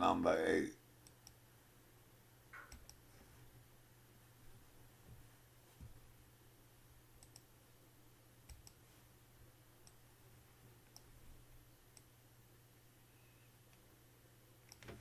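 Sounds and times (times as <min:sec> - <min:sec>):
faint low hum: 0:00.0 - 0:15.0
computer mouse clicks: 0:01.0 - 0:01.4, 0:02.6 - 0:03.0, 0:07.2 - 0:07.5, 0:08.5 - 0:08.8, 0:10.9 - 0:11.1, 0:11.9 - 0:12.1, 0:14.6 - 0:15.0.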